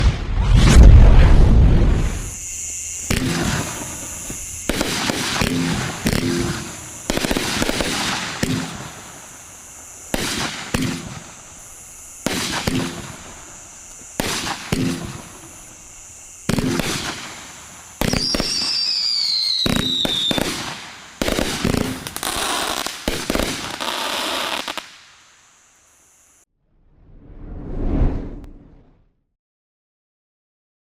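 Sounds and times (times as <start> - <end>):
falling firework whistle: 0.0 - 11.5, 12.1 - 25.0
firework shots with crackling: 0.0 - 25.4.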